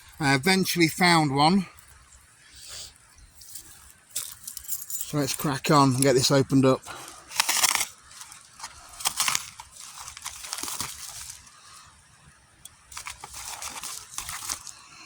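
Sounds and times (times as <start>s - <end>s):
packaging rustling and crinkling: 6.9s - 11.6s, 12.8s - 14.8s.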